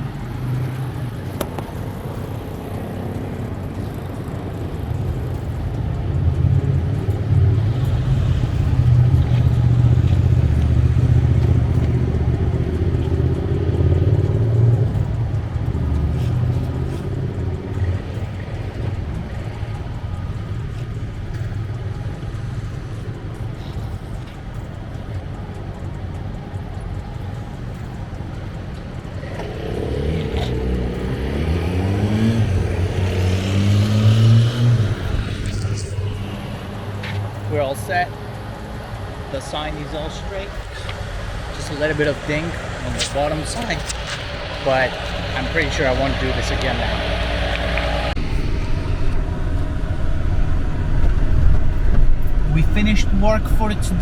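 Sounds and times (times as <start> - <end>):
vehicle engine running: 0.0 - 54.0.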